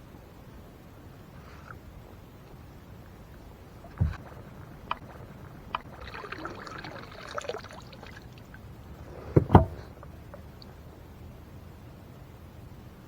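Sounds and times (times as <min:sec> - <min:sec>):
paddle and hull knocking: 0:03.7 - 0:10.9.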